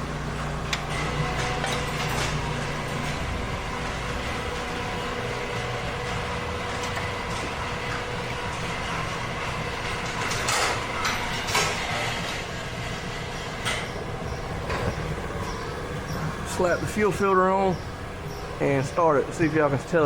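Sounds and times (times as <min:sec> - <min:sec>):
steady mechanical hum: 0:00.0 - 0:20.0
metal tools clanking: 0:00.8 - 0:04.0, 0:09.9 - 0:12.5.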